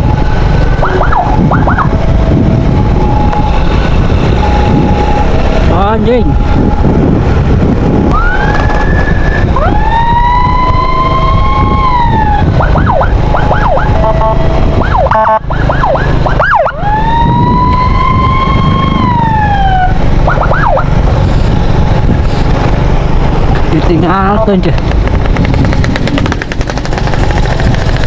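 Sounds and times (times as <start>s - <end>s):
ambulance siren: 0.0s - 21.0s
low rumble: 0.0s - 26.3s.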